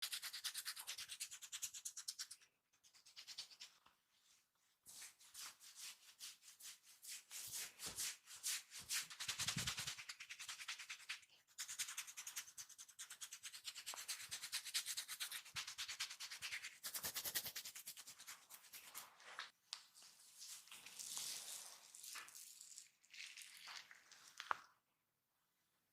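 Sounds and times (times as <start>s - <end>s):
hands rubbing and scratching: 0.0s - 4.0s, 4.9s - 19.5s.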